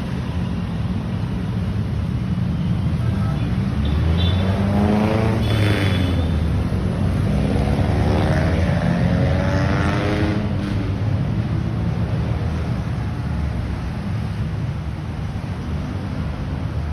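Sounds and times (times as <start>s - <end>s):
vehicles accelerating and passing: 0.0s - 16.9s.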